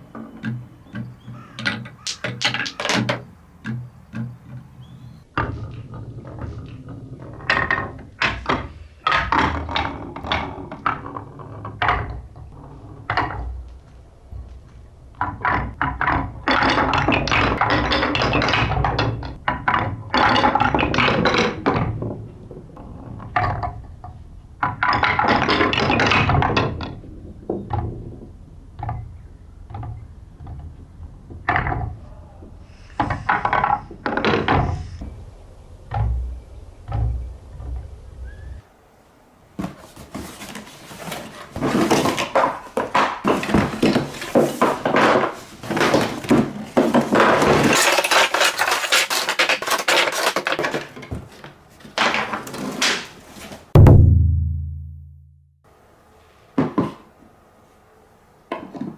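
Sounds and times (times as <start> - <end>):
marbles clicking down marble run: 1.6 - 3.2.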